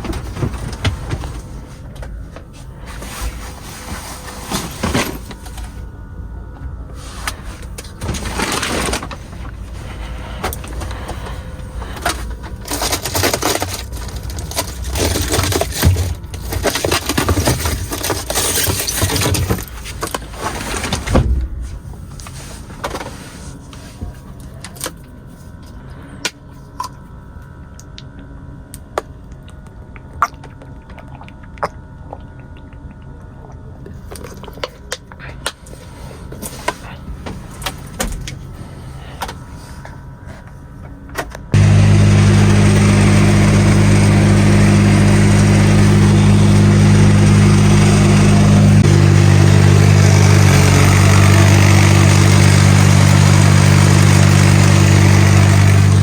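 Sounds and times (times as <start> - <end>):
truck engine and road rumble: 41.6 - 56.0.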